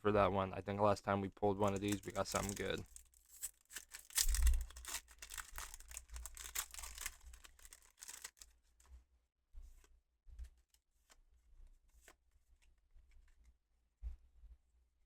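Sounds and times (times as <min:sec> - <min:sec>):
foil wrapper tearing and crinkling: 0:01.6 - 0:08.5.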